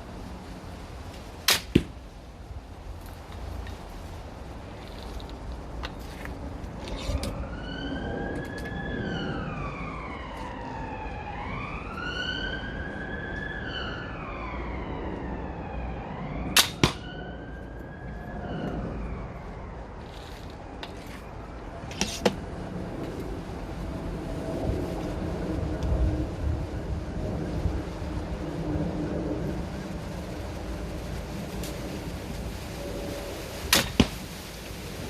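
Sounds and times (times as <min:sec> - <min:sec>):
emergency vehicle siren wailing: 0:07.0 - 0:21.9
slingbow loosing arrow cracks: 0:16.6 - 0:17.0, 0:33.7 - 0:34.2.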